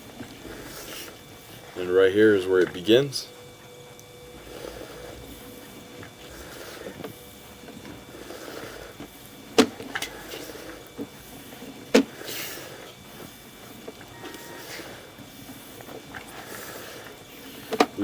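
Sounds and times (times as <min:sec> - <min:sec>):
equipment knocks and clicks: 0:17.7 - 0:18.0.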